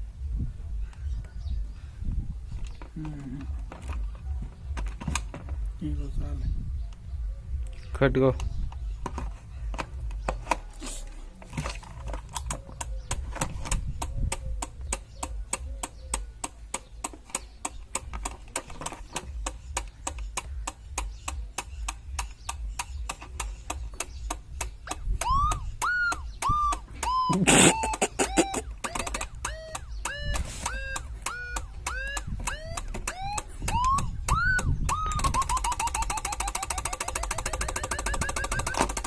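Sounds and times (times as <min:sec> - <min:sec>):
relay clicking: 0:21.9 - 0:39.0.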